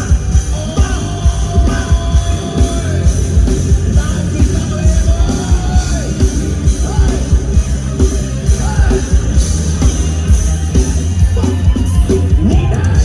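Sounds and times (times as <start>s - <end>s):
person singing: 0.0s - 7.7s, 11.2s - 13.0s
pounding drum beat: 0.0s - 13.0s
rock band playing: 0.0s - 13.0s.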